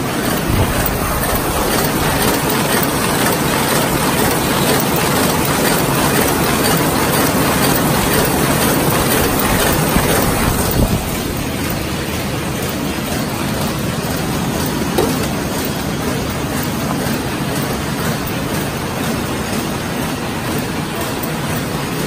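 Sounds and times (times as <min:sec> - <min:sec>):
paper bag machine clattering: 0:00.0 - 0:22.0.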